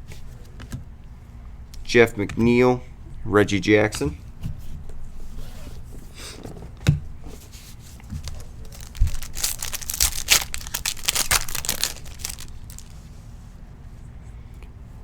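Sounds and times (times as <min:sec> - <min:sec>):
foil wrapper tearing and crinkling: 0:08.3 - 0:13.0.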